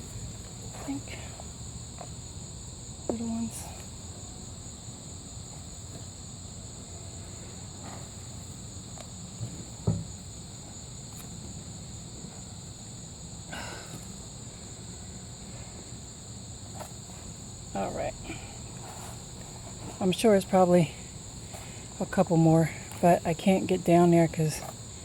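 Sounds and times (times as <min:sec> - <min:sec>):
insects chirring: 0:00.0 - 0:25.0
scraping rustle in soil: 0:07.7 - 0:09.0, 0:18.7 - 0:20.5
dull thumps: 0:09.0 - 0:11.6.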